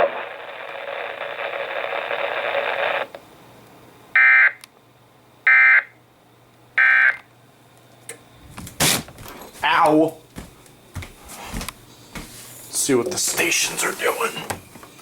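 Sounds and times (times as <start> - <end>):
radio static hiss: 0.0 - 3.2, 12.7 - 14.6.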